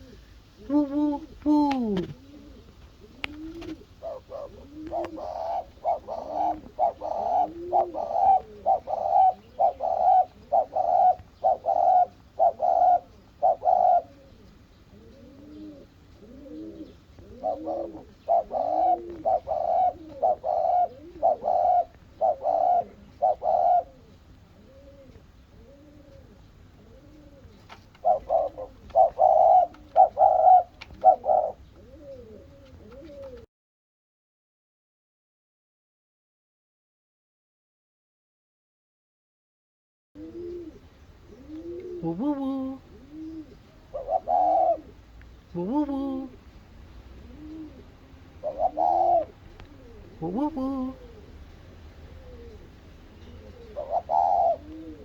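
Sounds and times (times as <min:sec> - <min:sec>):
doves cooing: 0:00.0 - 0:33.5, 0:40.2 - 0:55.0.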